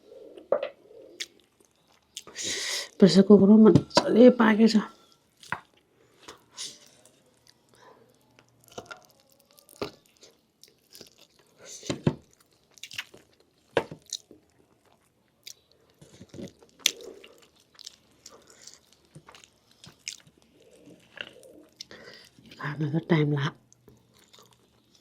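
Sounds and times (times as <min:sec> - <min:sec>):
wet chewing: 0:01.1 - 0:02.4, 0:05.1 - 0:22.6, 0:23.6 - 0:25.0
biting crunches and clicks: 0:01.2 - 0:02.4, 0:05.4 - 0:22.6, 0:23.7 - 0:25.0.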